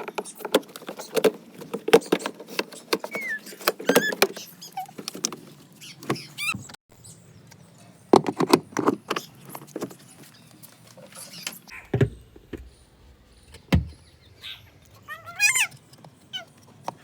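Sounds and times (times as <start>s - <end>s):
short squeaks: 2.8s - 5.0s.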